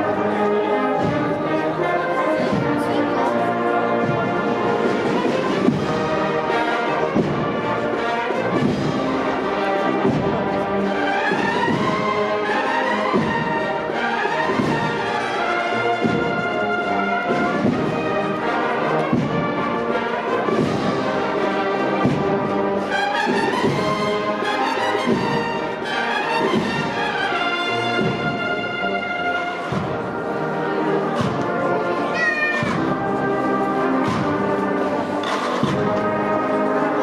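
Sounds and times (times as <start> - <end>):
brass band playing a slow march: 0.0 - 37.0
drum strokes: 4.0 - 12.3, 16.0 - 36.4.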